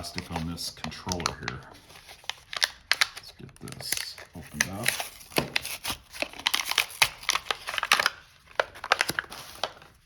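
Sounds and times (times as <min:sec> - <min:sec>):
plastic packaging crackling: 0:00.0 - 0:10.0.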